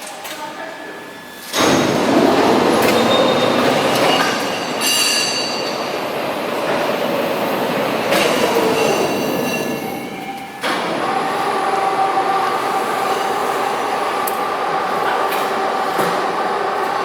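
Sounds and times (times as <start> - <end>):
metallic squealing: 1.3 - 6.1, 8.2 - 10.6.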